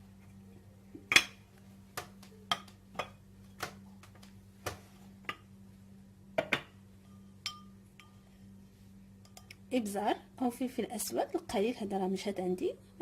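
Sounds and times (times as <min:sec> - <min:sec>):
spoon tapping kitchen containers: 0:02.0 - 0:03.8.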